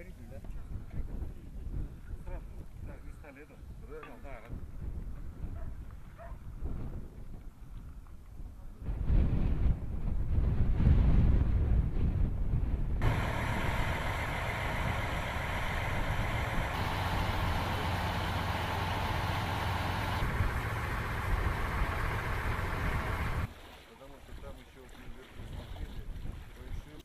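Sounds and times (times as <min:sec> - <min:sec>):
wind rumble on microphone: 0:00.0 - 0:17.9, 0:18.8 - 0:23.5, 0:24.4 - 0:27.0
engine running steadily: 0:13.0 - 0:23.5.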